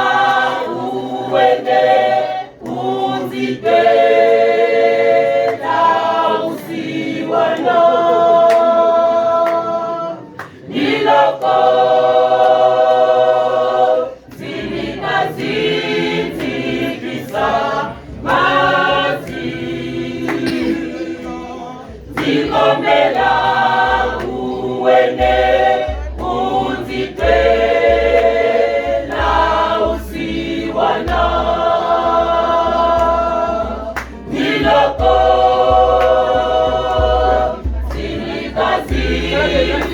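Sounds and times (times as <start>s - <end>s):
choir singing a cappella: 0.0s - 39.9s
low pulsing beat: 14.4s - 39.9s.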